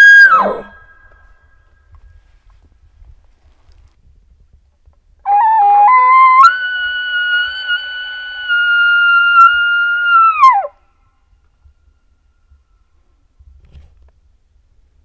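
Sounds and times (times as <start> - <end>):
elk bugling: 0.0 - 1.4, 5.3 - 10.8.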